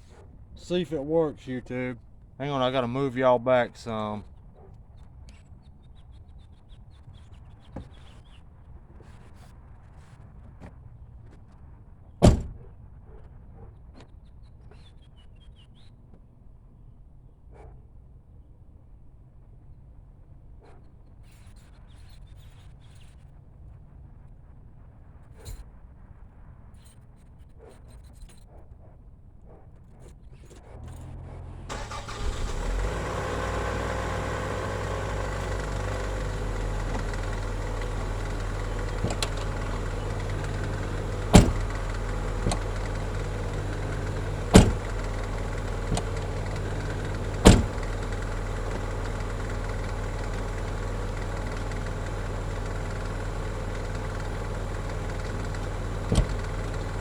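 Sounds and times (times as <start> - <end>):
car door shutting hard: 12.2 - 12.6, 31.7 - 57.0
car engine starting and idling: 30.8 - 57.0
door latch clicks: 34.7 - 51.8, 53.8 - 57.0.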